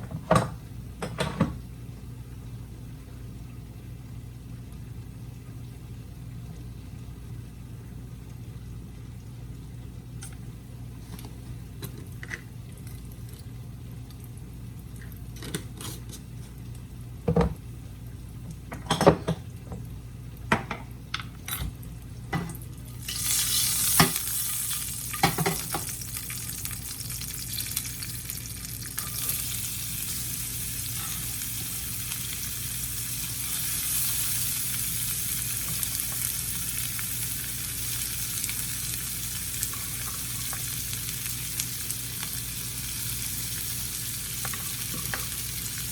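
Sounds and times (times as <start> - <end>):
food sizzling in hot oil: 22.9 - 45.9.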